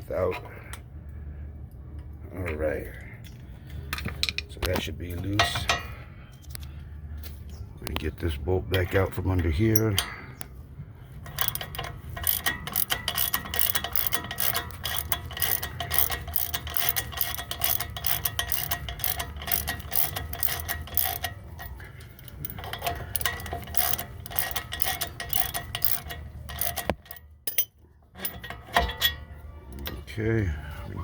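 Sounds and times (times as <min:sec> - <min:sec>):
socket ratchet clicking rapidly: 0:11.3 - 0:28.7.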